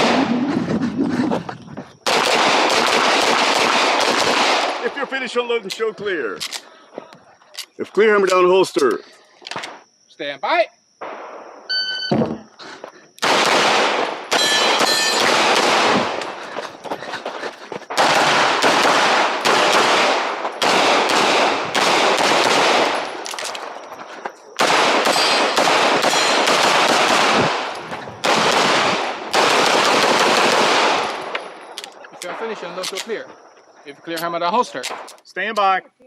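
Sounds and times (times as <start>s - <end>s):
pistol firing rapid shots: 2.0s - 4.8s, 13.2s - 16.2s, 17.9s - 23.2s, 24.6s - 31.2s.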